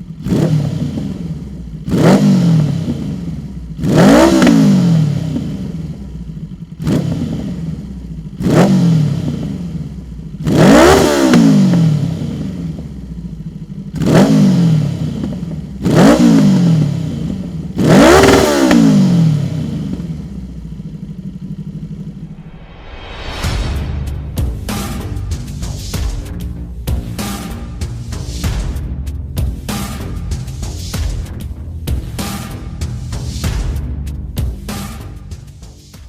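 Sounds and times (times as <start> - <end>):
motorcycle engine revving: 0.0 - 22.6, 24.1 - 36.0.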